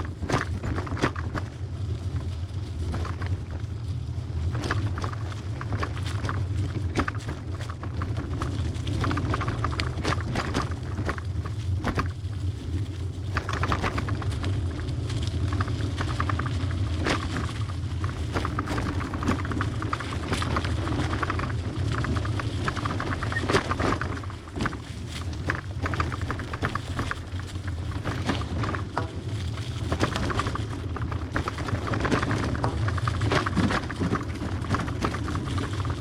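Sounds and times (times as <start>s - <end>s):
wind rumble on microphone: 0.0s - 36.0s
bicycle parts rattling and clicking: 15.4s - 36.0s.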